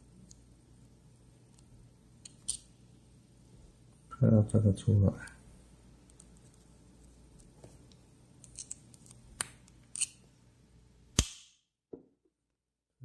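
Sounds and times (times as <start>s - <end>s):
lighter parts clicking: 8.4s - 10.2s.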